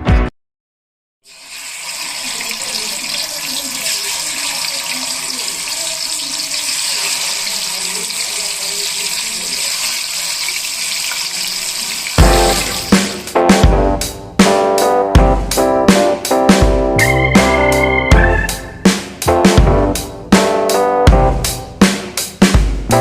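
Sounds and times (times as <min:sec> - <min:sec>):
fish frying in hot oil: 0:01.2 - 0:13.4.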